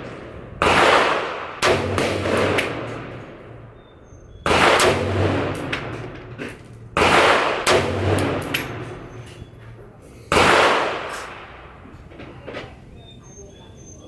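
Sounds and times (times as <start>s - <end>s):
rifle shots with echo: 0.0s - 9.6s, 10.3s - 12.4s
fainter gunshot cracks: 10.3s - 11.6s.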